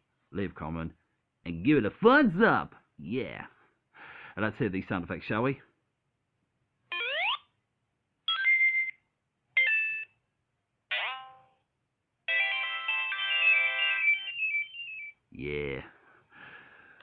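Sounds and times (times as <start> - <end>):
toy electronic game sound effects: 6.9 - 7.5, 8.3 - 9.0, 9.6 - 10.1, 10.9 - 11.4, 12.3 - 15.2.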